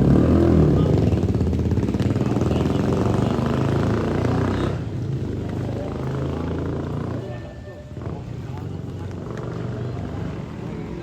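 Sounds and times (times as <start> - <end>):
vehicle engine running: 0.0 - 7.2.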